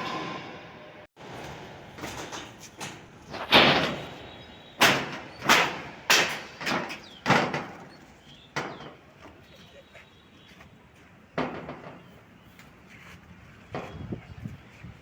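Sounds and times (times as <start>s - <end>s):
loud bangs: 0.0s - 9.0s.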